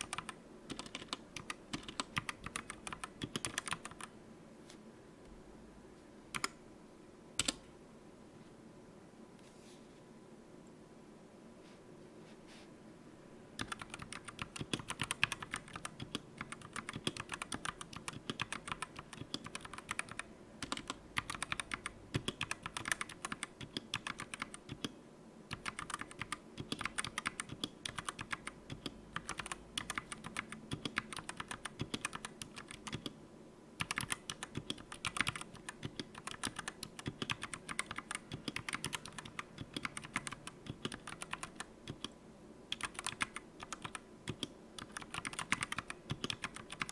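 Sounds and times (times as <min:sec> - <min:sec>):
mechanical keyboard typing: 0:00.0 - 0:04.1, 0:06.3 - 0:06.6, 0:07.4 - 0:07.6, 0:13.6 - 0:24.9, 0:25.5 - 0:33.2, 0:33.8 - 0:46.9.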